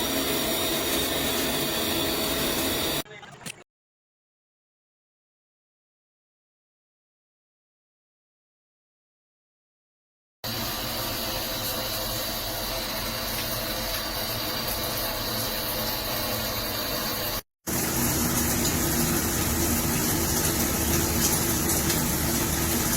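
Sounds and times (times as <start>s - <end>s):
shower water spraying: 0.0s - 3.0s, 10.5s - 22.9s.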